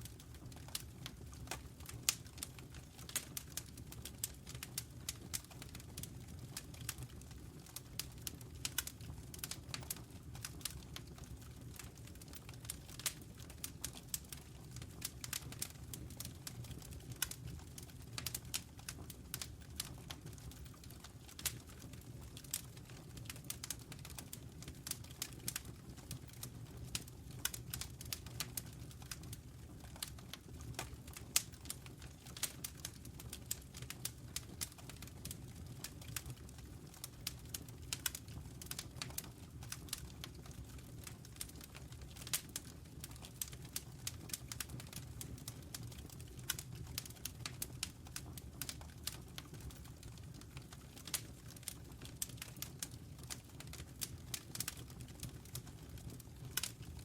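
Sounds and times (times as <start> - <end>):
low rumble of flames: 0.0 - 57.0
wood fire crackling: 0.0 - 57.0.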